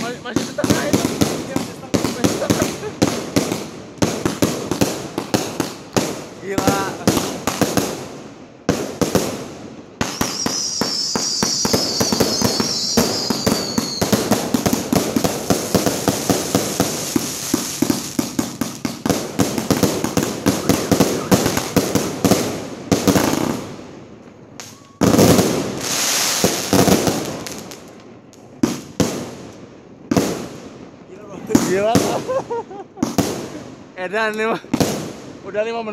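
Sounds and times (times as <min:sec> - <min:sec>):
fireworks shots and bangs: 0:00.0 - 0:24.0, 0:24.6 - 0:35.9
high wavering whistle: 0:10.2 - 0:14.1.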